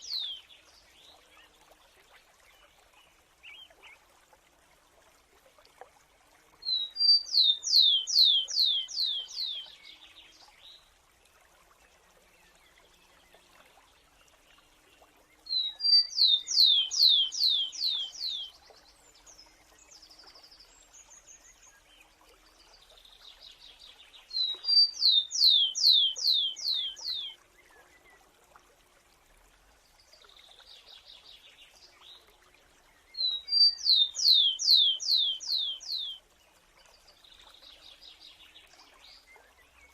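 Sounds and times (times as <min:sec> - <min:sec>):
faint soft bird calls: 0:11.9 - 0:28.6, 0:29.9 - 0:39.9
sparrow singing: 0:33.2 - 0:36.2.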